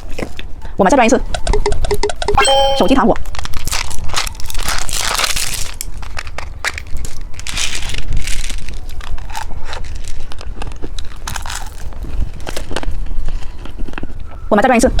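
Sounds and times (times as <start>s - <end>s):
plastic wrapper crinkling: 3.4s - 14.1s
candy crunching: 3.4s - 14.4s.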